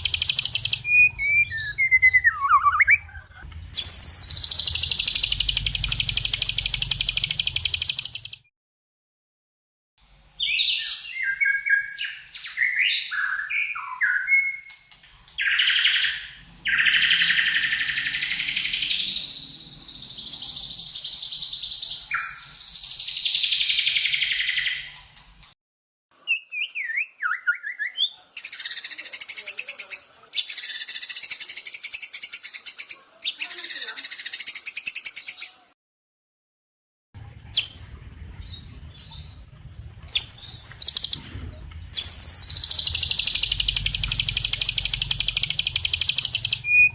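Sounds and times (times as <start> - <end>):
songbird chirps and trills: 0.0 - 8.5, 10.2 - 25.4, 26.2 - 35.7, 37.4 - 46.9.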